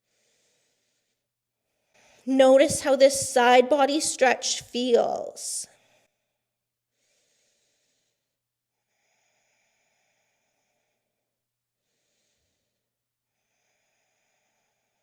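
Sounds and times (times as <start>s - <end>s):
faint slow breathing: 0.0s - 2.3s, 5.7s - 15.0s.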